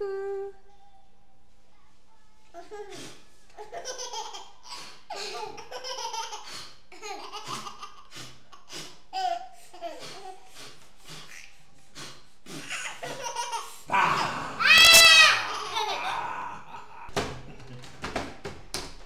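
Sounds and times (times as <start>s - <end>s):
baby laughing: 3.6s - 10.4s, 12.6s - 13.8s, 14.6s - 17.1s.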